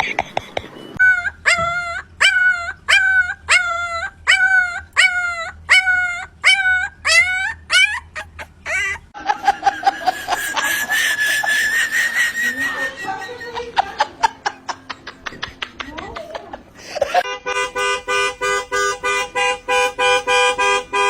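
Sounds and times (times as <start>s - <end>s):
dog yipping: 1.0s - 9.0s.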